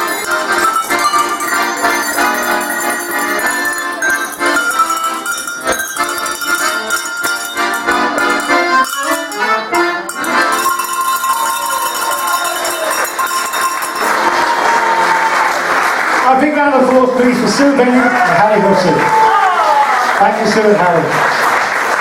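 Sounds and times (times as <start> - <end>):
cow bells ringing: 0.0 - 14.5
accordion chords: 0.0 - 19.1.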